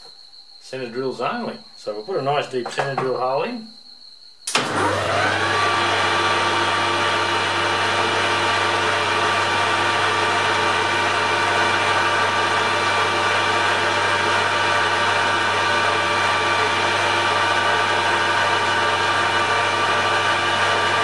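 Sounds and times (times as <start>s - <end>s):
metal lathe running: 4.6s - 21.0s.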